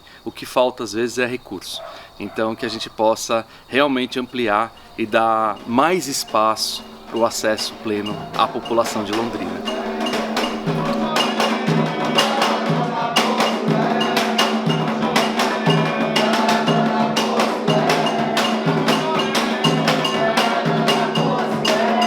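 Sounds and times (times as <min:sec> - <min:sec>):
wooden percussion knocking: 0:04.3 - 0:11.2.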